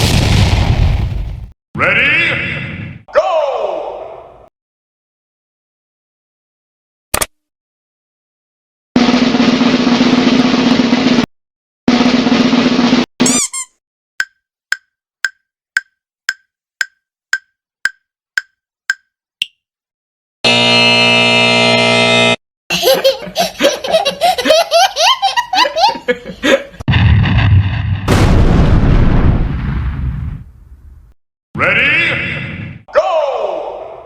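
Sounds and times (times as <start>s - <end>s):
countdown timer ticks: 14.2s - 19.6s
steady buzzer tone: 20.4s - 22.4s.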